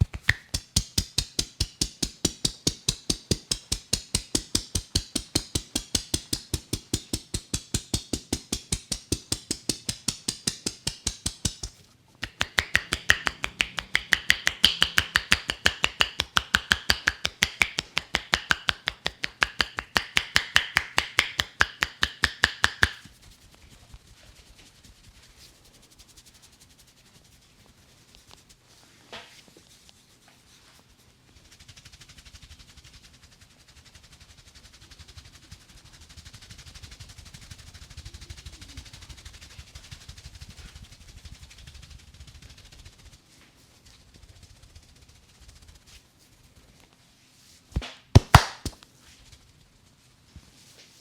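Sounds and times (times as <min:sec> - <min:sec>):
hands striking a head: 0:00.0 - 0:23.1, 0:47.8 - 0:48.8.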